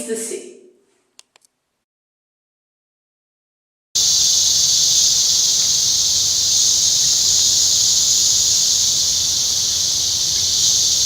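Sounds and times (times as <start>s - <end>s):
insects droning chorus: 4.0s - 11.0s.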